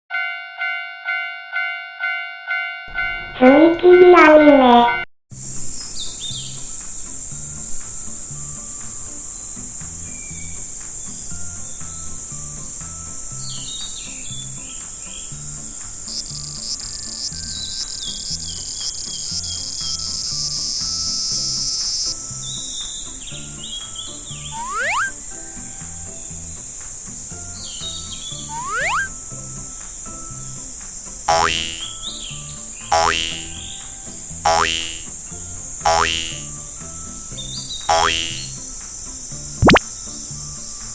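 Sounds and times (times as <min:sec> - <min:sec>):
bird-like chirps: 0:16.1 - 0:22.2, 0:24.5 - 0:25.2, 0:28.5 - 0:29.1, 0:31.3 - 0:32.0, 0:37.9 - 0:38.5
cicadas buzzing: 0:16.1 - 0:22.2, 0:31.3 - 0:31.9, 0:32.9 - 0:33.6, 0:34.5 - 0:35.1, 0:37.9 - 0:38.5
pulsing cicada call: 0:16.1 - 0:22.2, 0:24.6 - 0:25.2, 0:28.5 - 0:29.1, 0:34.5 - 0:35.1
rising whistle-like swoops: 0:24.6 - 0:25.2, 0:28.5 - 0:29.1
light music with bass line: 0:31.3 - 0:33.8, 0:34.5 - 0:38.8.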